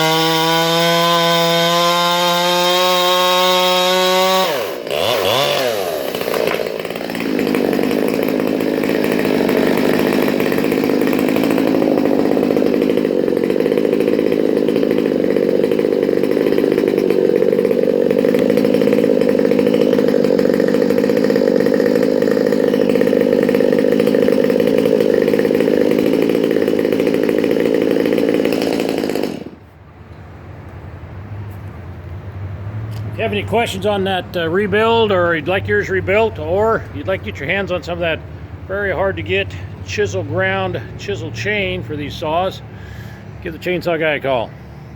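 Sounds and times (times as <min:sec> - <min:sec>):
chainsaw cutting wood: 0:00.0 - 0:29.8, 0:32.9 - 0:44.9.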